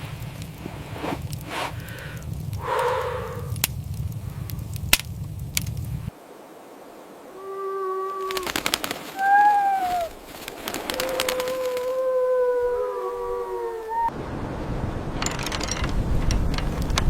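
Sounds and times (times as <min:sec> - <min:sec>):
sharp cracks: 0:00.0 - 0:06.1, 0:08.2 - 0:12.0
wolves howling: 0:09.2 - 0:10.2, 0:10.9 - 0:14.2.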